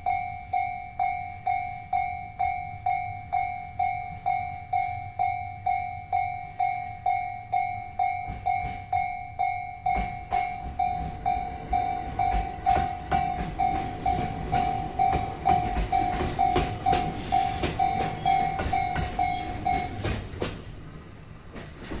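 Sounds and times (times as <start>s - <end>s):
level crossing warning bell: 0.0s - 20.5s
train rumble: 0.0s - 22.0s
train wheels clacking over rail joints: 8.2s - 9.2s, 9.8s - 22.0s.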